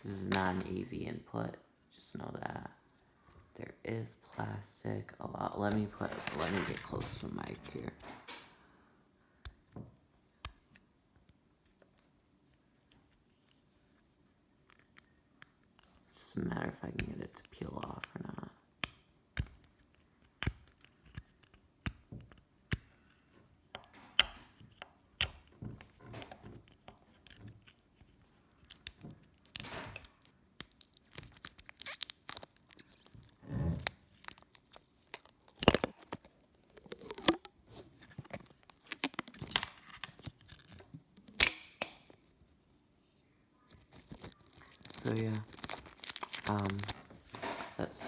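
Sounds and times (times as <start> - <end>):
plastic film peeling off: 5.6 - 8.3, 25.8 - 42.5, 43.7 - 48.0.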